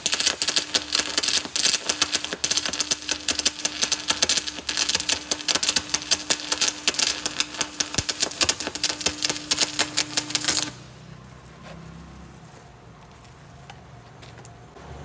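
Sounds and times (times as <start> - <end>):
welding arc crackling: 0.0 - 11.2.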